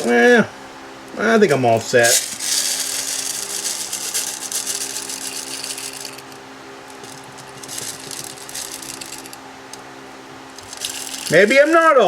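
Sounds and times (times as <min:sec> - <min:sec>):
pellets rattling into rifle stock: 0:02.0 - 0:09.4, 0:10.6 - 0:11.8.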